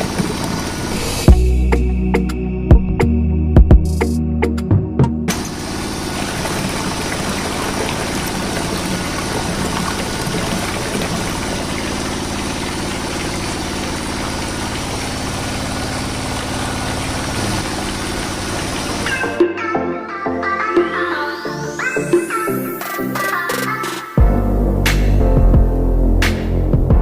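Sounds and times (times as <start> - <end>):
motor running steadily: 0.0 - 1.5, 5.3 - 19.1.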